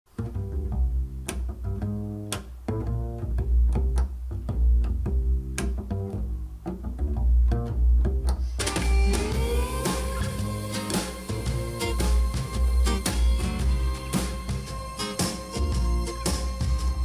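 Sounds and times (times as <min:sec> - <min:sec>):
bowed and plucked strings: 0:00.1 - 0:17.0
deep bass line: 0:00.1 - 0:17.0
music through speakers: 0:08.5 - 0:17.0
sharp percussive hits: 0:08.6 - 0:17.0.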